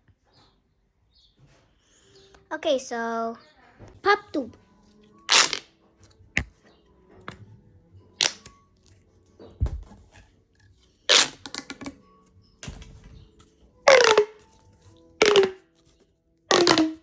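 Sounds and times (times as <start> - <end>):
plastic pop tube popping: 5.3 - 5.7, 6.3 - 6.6, 8.2 - 8.6, 11.1 - 12.0, 13.9 - 14.6, 15.2 - 15.6, 16.5 - 17.0.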